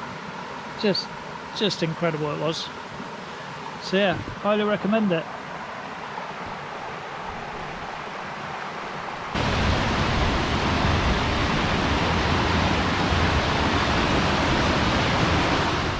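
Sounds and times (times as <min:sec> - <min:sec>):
waterfall roaring: 0:09.3 - 0:15.9.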